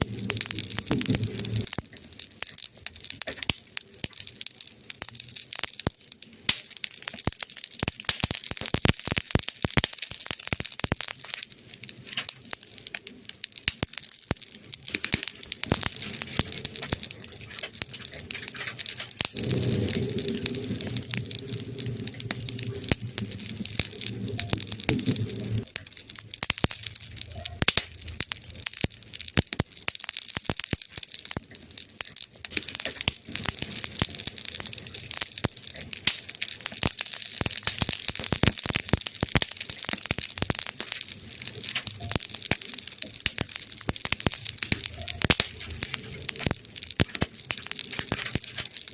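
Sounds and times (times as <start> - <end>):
campfire crackling and popping: 0.0 - 48.9
low hum: 19.0 - 25.7.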